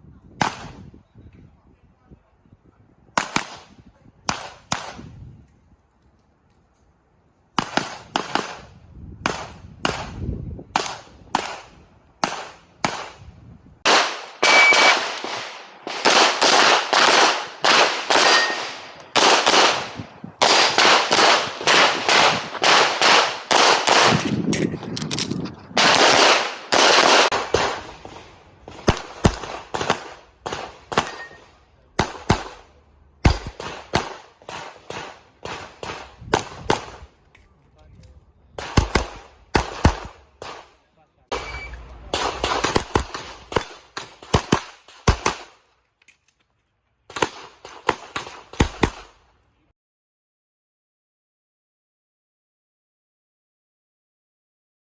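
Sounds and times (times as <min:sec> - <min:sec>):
handgun shots with echo: 0:13.9 - 0:24.7.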